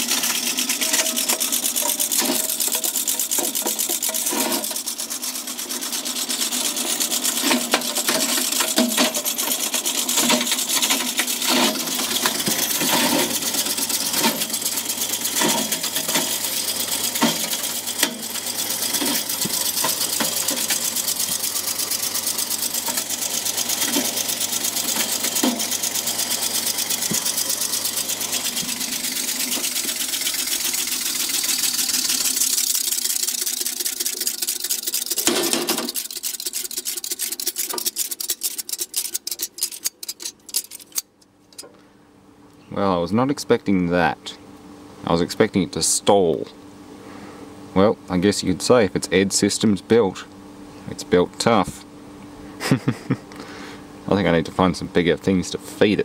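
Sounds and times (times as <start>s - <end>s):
shredder rattling: 0.0s - 41.2s.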